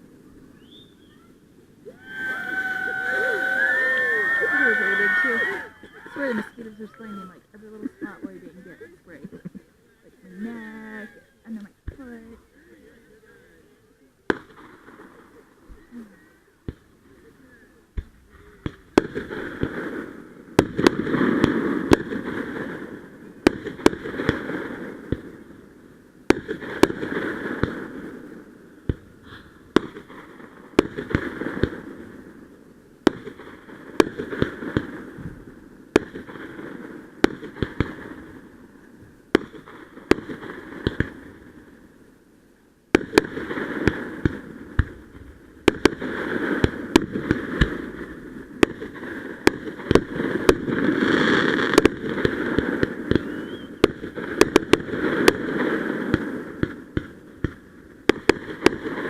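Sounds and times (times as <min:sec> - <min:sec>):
fireworks bangs: 0:00.0 - 0:09.6, 0:14.2 - 0:42.0, 0:42.9 - 0:59.0.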